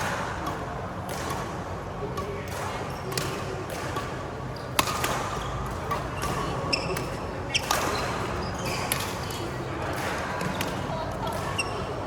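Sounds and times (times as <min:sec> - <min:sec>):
racket hitting shuttlecock: 0:00.0 - 0:09.3, 0:09.9 - 0:11.4
shoes squeaking on court: 0:05.4 - 0:09.6.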